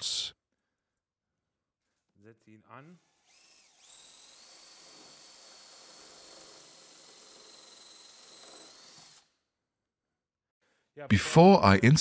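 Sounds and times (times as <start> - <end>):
power drill whining: 3.0 - 9.4.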